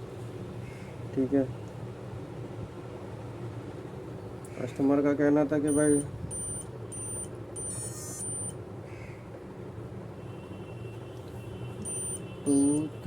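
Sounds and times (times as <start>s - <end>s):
low steady hum: 0.0s - 10.0s, 10.6s - 13.0s
faint electronic beep: 5.7s - 8.6s, 11.8s - 12.9s.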